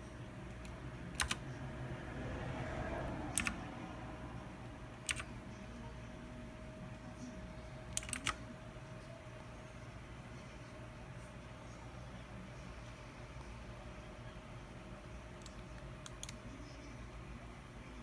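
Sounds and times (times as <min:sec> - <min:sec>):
faint steady hum: 0:00.0 - 0:18.0
mechanical keyboard key clicks: 0:00.6 - 0:01.4, 0:03.3 - 0:03.6, 0:05.0 - 0:05.3, 0:07.9 - 0:08.4.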